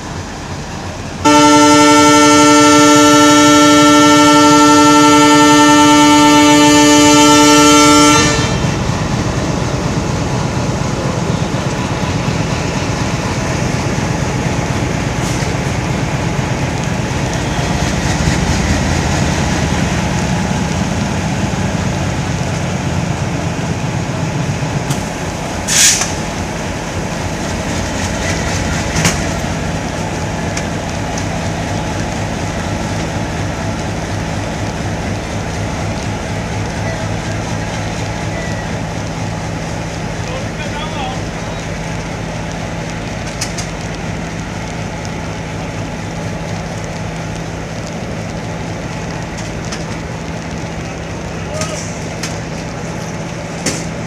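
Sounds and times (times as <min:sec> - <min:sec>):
locomotive horn: 0:01.2 - 0:08.8
diesel engine chugging: 0:07.1 - 0:54.0
brief hiss: 0:25.6 - 0:26.3.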